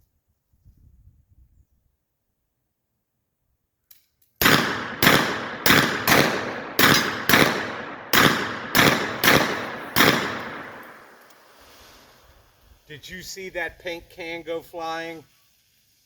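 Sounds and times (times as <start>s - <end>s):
echoing gunshots: 4.4s - 11.2s.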